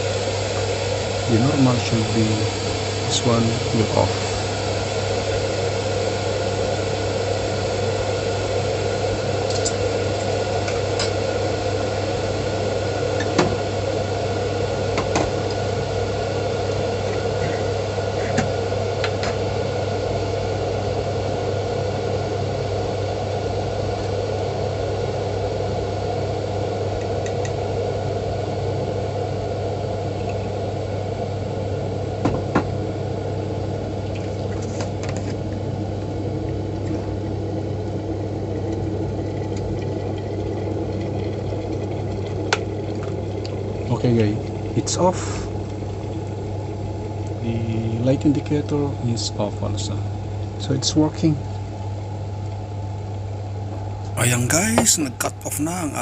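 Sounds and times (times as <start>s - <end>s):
constant low hum: 0.0s - 21.4s
kettle water boiling: 0.0s - 53.4s.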